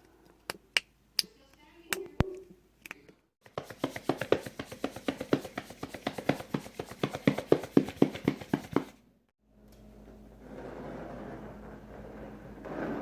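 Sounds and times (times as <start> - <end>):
rapid even tapping: 3.4 - 9.0.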